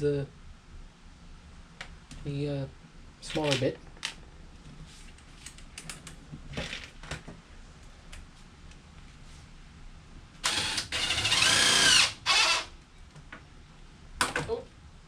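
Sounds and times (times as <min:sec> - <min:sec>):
cordless drill motor whine: 0:10.4 - 0:12.7.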